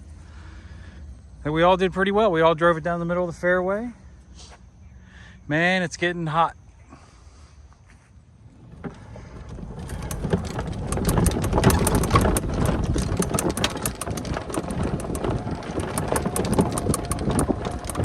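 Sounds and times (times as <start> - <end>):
golf cart driving: 8.3 - 18.0
golf cart body rattling: 8.4 - 18.0.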